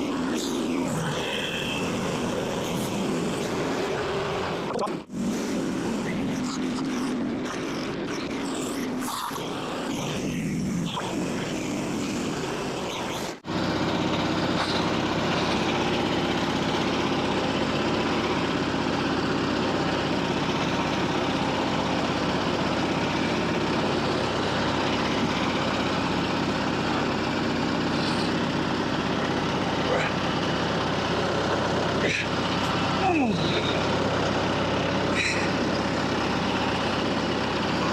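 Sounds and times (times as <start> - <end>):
sawmill petrol engine running: 0.0 - 37.9.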